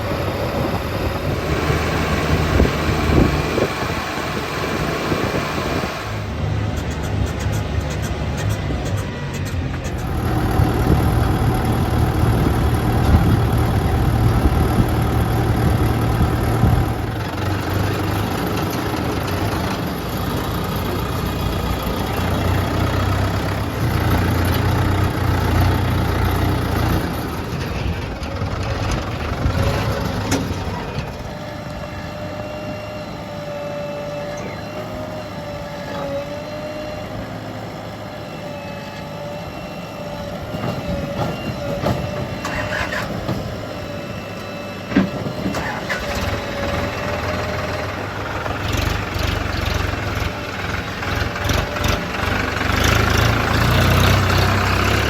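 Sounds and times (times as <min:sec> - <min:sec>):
steady whine: 0:00.0 - 0:37.3
diesel machinery engines under load: 0:00.0 - 0:55.0.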